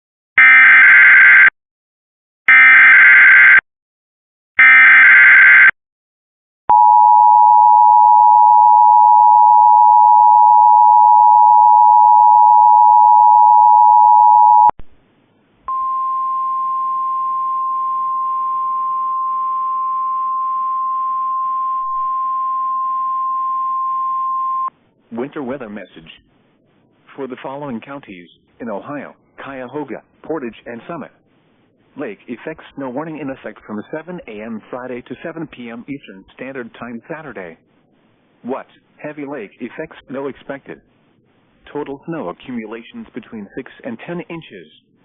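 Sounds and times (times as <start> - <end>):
steady high alarm tone: 0.4 - 1.5, 2.5 - 3.6, 4.6 - 5.7, 6.7 - 14.7.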